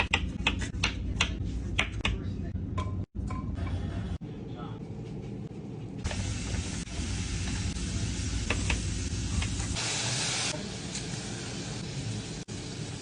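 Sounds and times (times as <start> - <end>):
food sizzling in a hot pan: 6.1 - 13.0.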